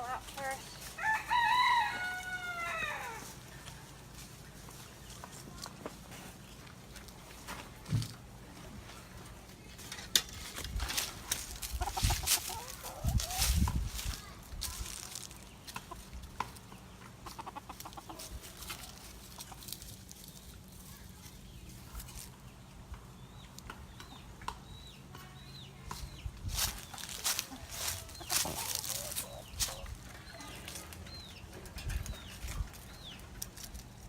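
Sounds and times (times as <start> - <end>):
chickens clucking: 0.0 - 25.2, 25.8 - 34.0.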